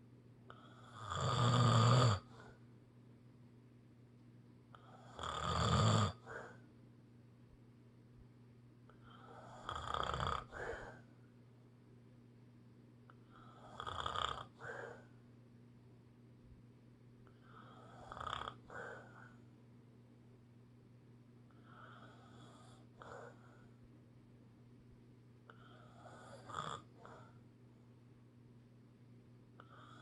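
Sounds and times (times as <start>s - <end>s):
person snoring: 0.5s - 2.6s, 4.7s - 6.6s, 9.0s - 11.1s, 13.3s - 15.1s, 17.3s - 19.4s, 25.5s - 27.3s.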